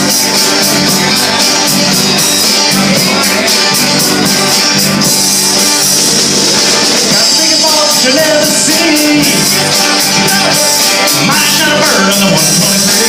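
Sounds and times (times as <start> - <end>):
drum kit with steady beat: 0.0 - 13.0
electric guitar: 0.0 - 13.0.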